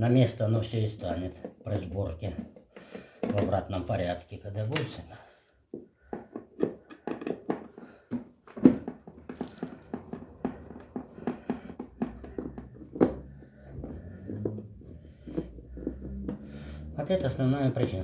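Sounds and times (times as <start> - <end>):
tools and parts clattering: 6.1 - 17.0.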